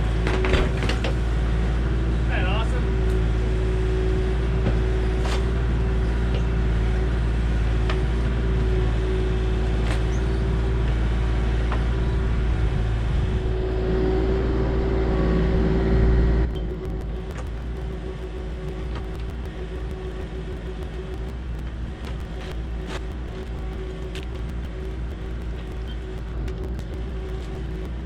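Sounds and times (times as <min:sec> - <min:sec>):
excavator diesel engine running: 0:02.9 - 0:28.0
sharp clicks or cracks: 0:16.5 - 0:28.0.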